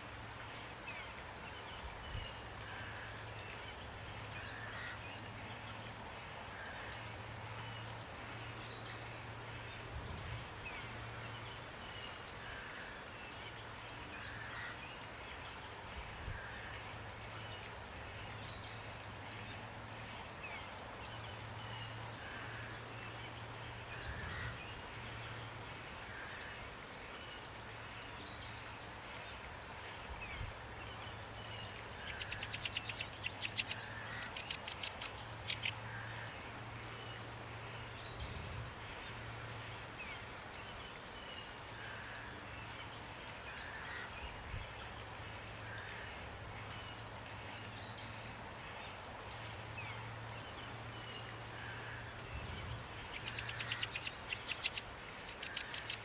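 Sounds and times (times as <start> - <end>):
steady rain hiss: 0.0 - 56.0
songbirds chirping and whistling: 47.9 - 56.0.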